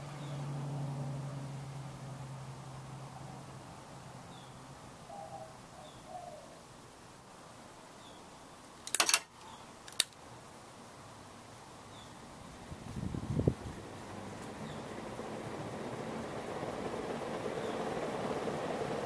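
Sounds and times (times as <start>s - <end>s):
sharp clicks: 8.8s - 10.2s
ceiling fan motor humming: 9.7s - 19.0s.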